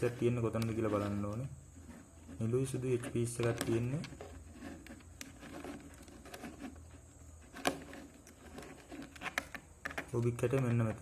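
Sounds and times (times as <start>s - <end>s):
puzzle cube clicking and rustling: 2.7s - 11.0s.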